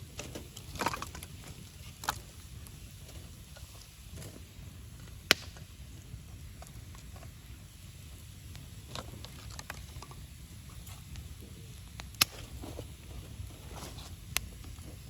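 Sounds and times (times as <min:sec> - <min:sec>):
campfire crackling: 0:00.0 - 0:15.0
loud sharp pop: 0:05.3 - 0:05.6.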